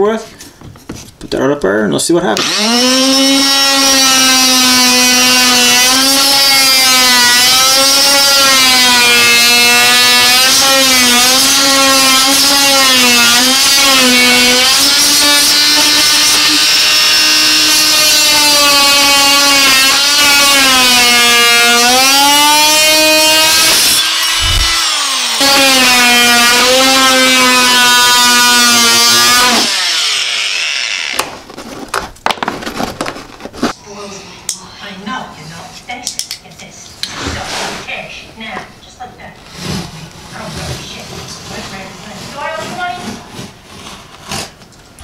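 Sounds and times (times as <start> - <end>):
multi-tool cutting wood: 2.4 - 33.5, 39.5 - 44.6.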